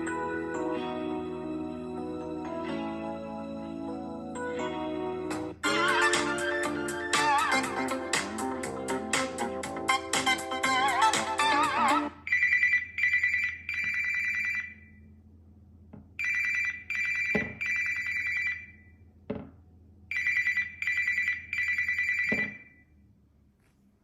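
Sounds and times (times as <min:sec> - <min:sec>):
musical ringtone: 0:00.0 - 0:14.8
telephone bell ringtone: 0:12.3 - 0:15.0, 0:16.2 - 0:18.9, 0:20.1 - 0:22.8.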